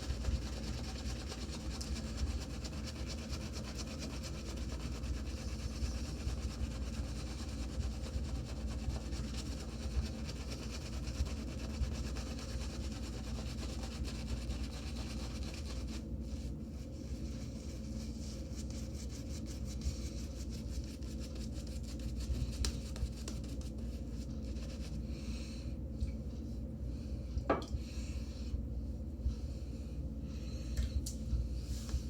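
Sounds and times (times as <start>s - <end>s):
shaving brush scrubbing lather: 0.0s - 16.0s.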